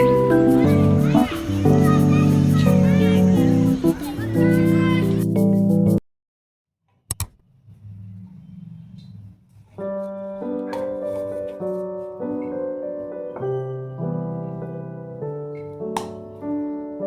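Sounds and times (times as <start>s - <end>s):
soft piano music: 0.0s - 6.0s, 9.8s - 17.0s.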